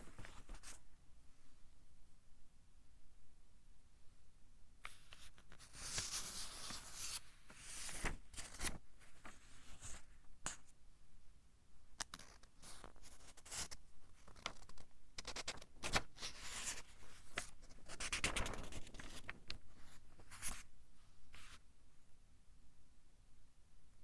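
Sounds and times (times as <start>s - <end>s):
book pages turning: 5.1s - 10.6s, 13.4s - 19.6s.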